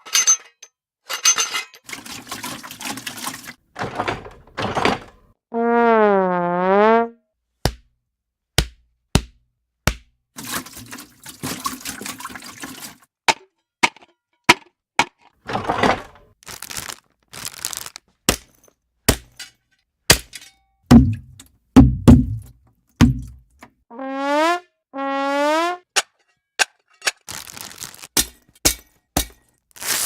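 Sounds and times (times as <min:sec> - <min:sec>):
heavy low thumps: 0:20.9 - 0:23.4
rising honking tones: 0:23.9 - 0:25.8.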